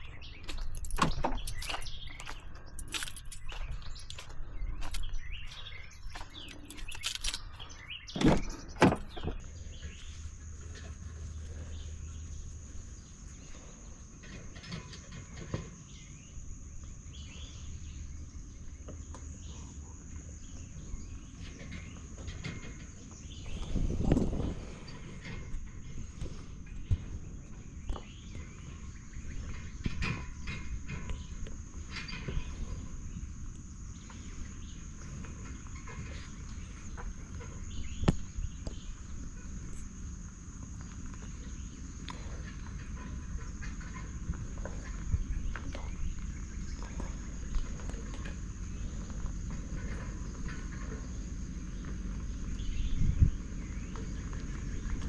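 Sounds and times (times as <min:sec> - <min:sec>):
birds chirping: 0:00.0 - 0:55.0
low rumble: 0:23.4 - 0:35.4.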